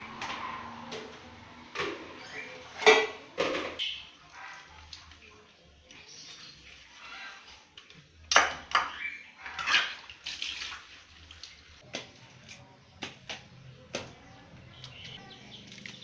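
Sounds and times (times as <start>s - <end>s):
water splashing and running: 9.4s - 12.7s.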